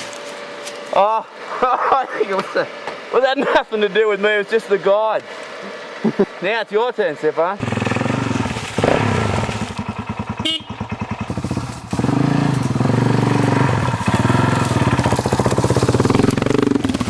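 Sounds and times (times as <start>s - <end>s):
motorcycle engine revving: 7.6s - 17.0s.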